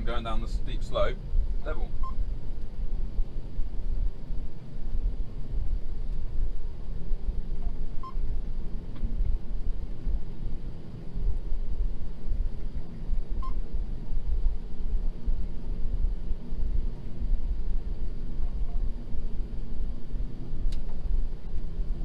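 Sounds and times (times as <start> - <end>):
short electronic beeps: 2.0 - 2.2, 13.4 - 13.6.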